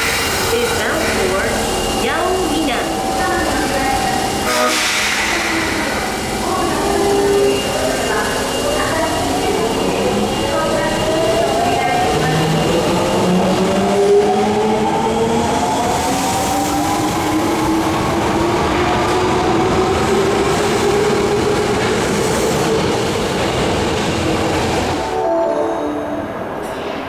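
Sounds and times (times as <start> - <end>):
rumbling wheel and track noise: 0.0 - 25.1.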